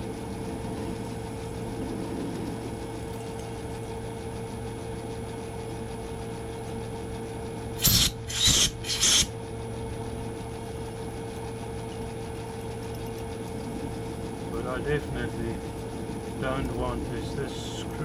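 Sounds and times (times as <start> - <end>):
workshop machine motor humming: 7.6 - 18.0
harsh rasping scrapes: 7.8 - 9.3.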